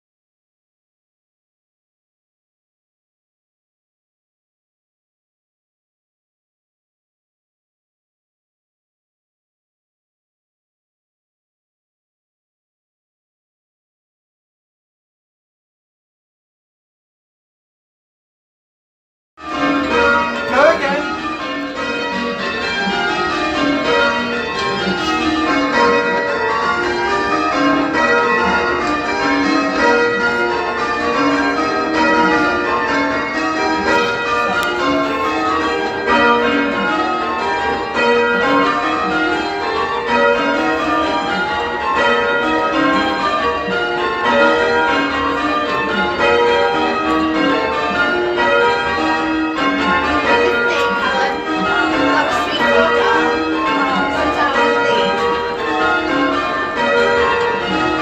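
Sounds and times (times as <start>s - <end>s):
church bells change ringing: 19.4s - 58.0s.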